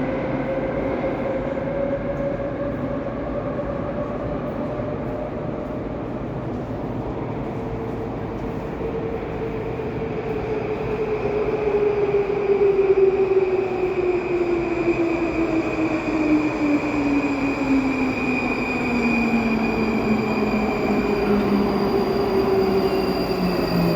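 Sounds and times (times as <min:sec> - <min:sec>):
train electric whine: 0:13.4 - 0:23.9.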